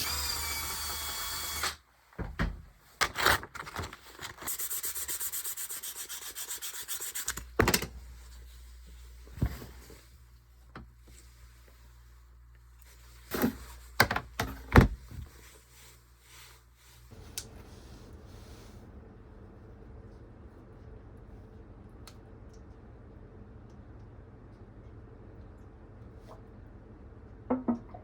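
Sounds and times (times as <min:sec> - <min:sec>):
wood being rubbed by hand: 0:04.5 - 0:07.3
wood knocks: 0:27.5 - 0:27.9.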